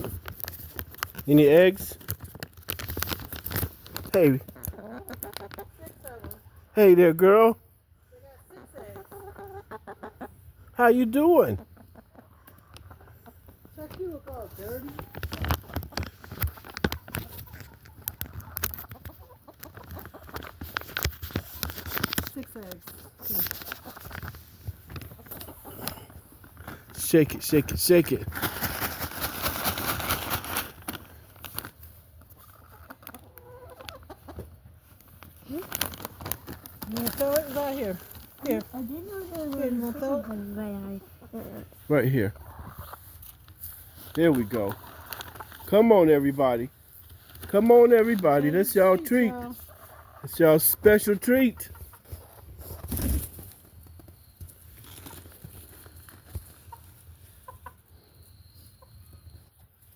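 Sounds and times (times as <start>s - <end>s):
chickens clucking: 3.9s - 59.9s.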